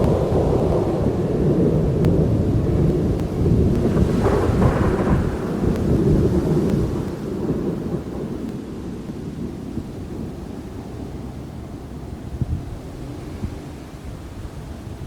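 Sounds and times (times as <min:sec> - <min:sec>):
steady rain: 0:00.0 - 0:15.0
thunder rumbling: 0:00.0 - 0:15.0.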